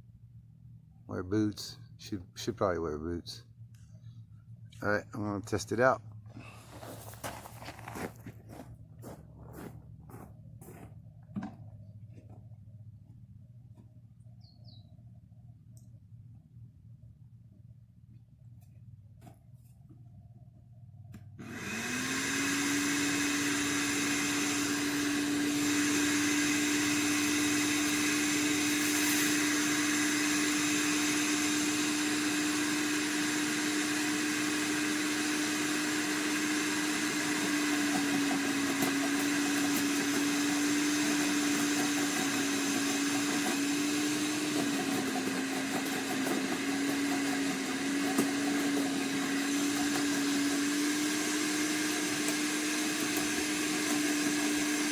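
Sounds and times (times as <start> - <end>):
wood chipper motor whining: 21.1 - 54.9.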